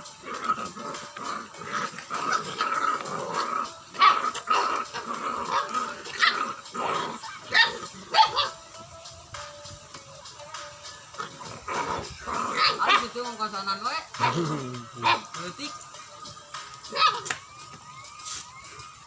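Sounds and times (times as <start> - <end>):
dog barking and growling: 0.0 - 8.7, 11.0 - 15.8, 16.8 - 17.4.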